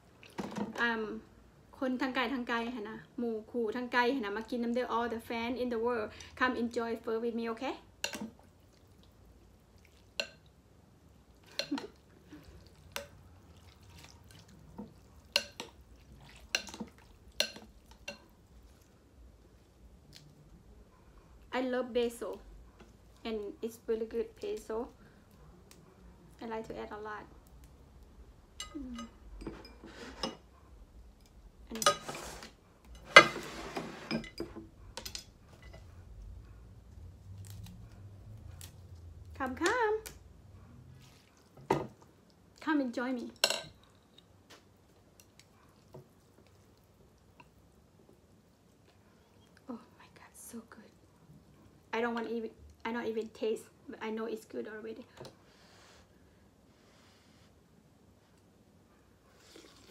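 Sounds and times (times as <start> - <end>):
spoon and chopsticks clinking bowl: 15.2 - 18.3, 43.4 - 44.1.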